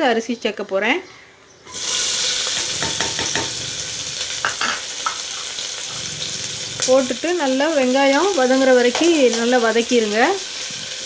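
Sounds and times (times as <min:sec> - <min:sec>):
onions sizzling in hot oil: 0:01.7 - 0:11.0
spoon stirring and knocking pan: 0:02.4 - 0:03.6, 0:04.4 - 0:05.3, 0:08.1 - 0:09.7.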